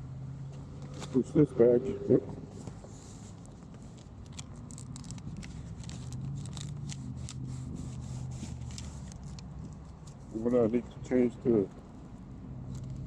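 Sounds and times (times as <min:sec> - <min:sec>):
low engine hum: 0:00.0 - 0:13.0
velcro crackling: 0:03.0 - 0:10.4.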